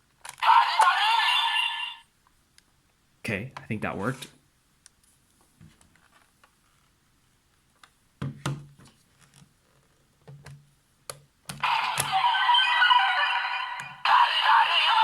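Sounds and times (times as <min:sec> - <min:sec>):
electronic toy music and effects: 0:11.6 - 0:15.0.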